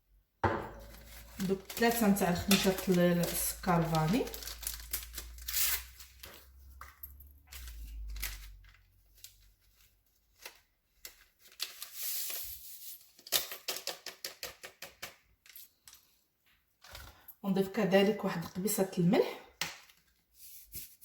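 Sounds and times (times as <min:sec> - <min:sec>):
paper sachets tearing and crinkling: 0:00.8 - 0:06.8, 0:07.5 - 0:13.9.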